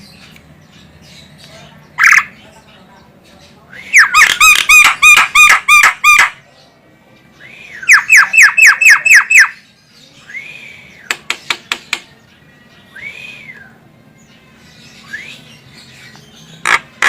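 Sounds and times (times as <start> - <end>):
bird calling with harsh notes: 0.0 - 2.5, 3.6 - 6.4, 7.4 - 17.0
bird sharp clicks: 11.0 - 12.1.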